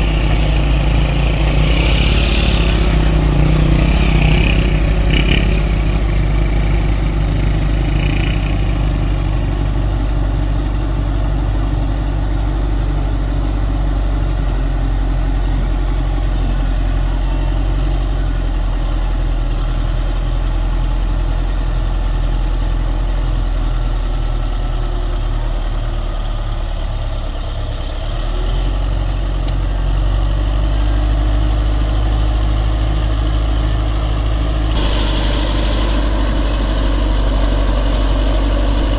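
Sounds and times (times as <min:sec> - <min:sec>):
construction machine diesel engine: 0:00.0 - 0:38.9.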